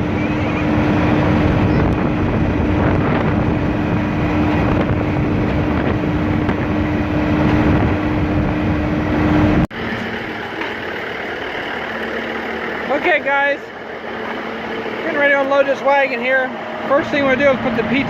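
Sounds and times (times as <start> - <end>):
wind noise on microphone: 0.0 - 9.7
engine idling: 0.0 - 18.0
tractor engine under load: 0.0 - 18.0.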